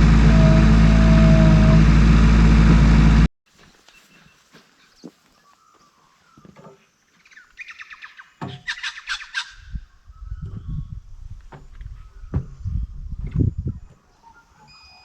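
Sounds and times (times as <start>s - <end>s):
low rumbling noise: 0.0s - 3.3s
bird chirping: 3.7s - 15.0s.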